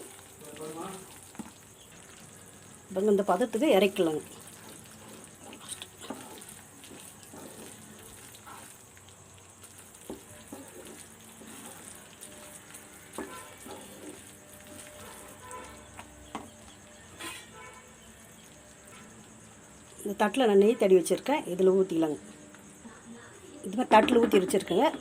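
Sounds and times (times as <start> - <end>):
batter sizzling in a pan: 0.0 - 25.0
spoon stirring and scraping: 3.6 - 9.0, 9.6 - 19.2.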